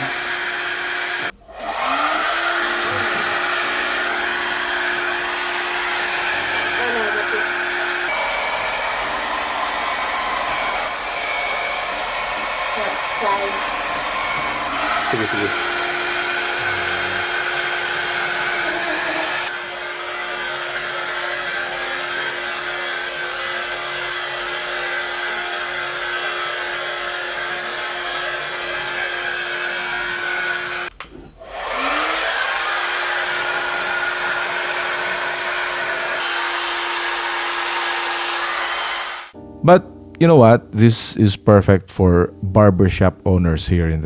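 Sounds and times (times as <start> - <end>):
motor spinning up whine: 0.0 - 30.9, 31.5 - 39.4
hair dryer running: 0.0 - 39.4.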